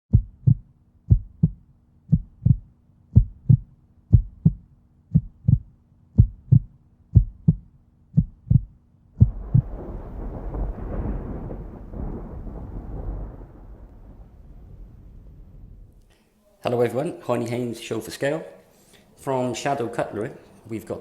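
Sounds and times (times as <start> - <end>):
heartbeat double thump: 0.1 - 11.6
low rumble of noise: 8.2 - 16.1.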